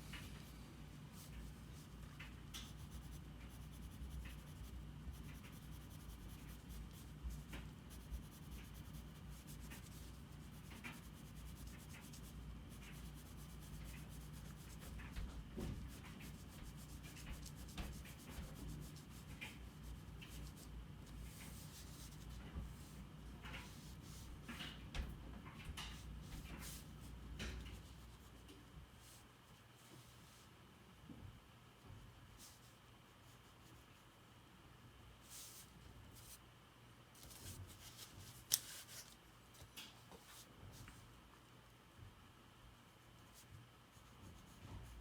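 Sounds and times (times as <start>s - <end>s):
low steady hum: 0.0s - 45.0s.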